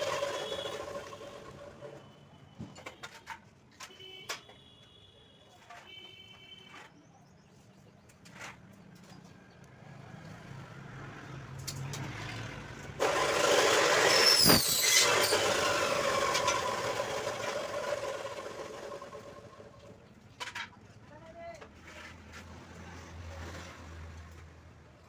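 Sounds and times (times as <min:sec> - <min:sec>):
vehicle passing by: 0:09.7 - 0:13.0, 0:22.2 - 0:24.7
falling whistle: 0:14.0 - 0:15.4.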